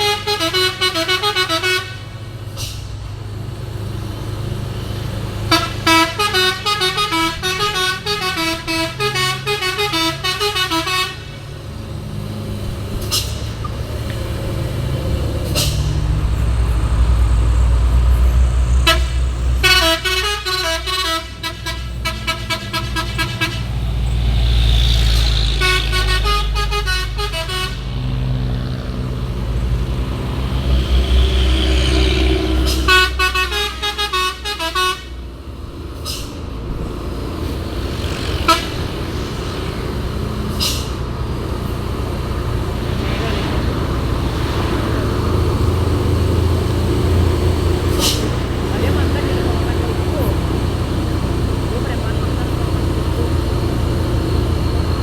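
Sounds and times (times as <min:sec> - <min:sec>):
multi-tone horns playing tunes: 0:00.0 - 0:02.2, 0:05.5 - 0:11.4, 0:18.8 - 0:23.8, 0:25.5 - 0:27.9, 0:31.9 - 0:35.2, 0:38.4 - 0:39.0
truck diesel engine rumbling: 0:00.0 - 0:55.0.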